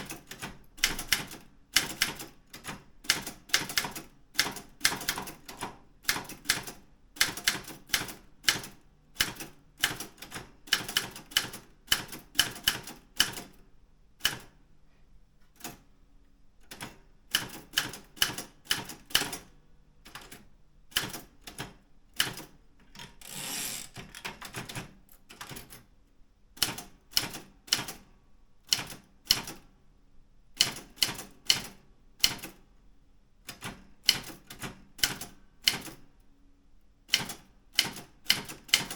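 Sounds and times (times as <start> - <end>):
typewriter carriage return rasp: 23.0 - 24.8.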